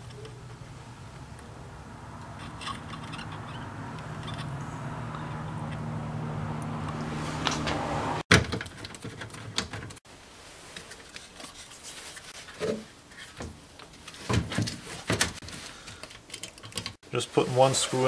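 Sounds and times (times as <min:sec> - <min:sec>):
wires and speaker clicking: 0:13.8 - 0:17.0.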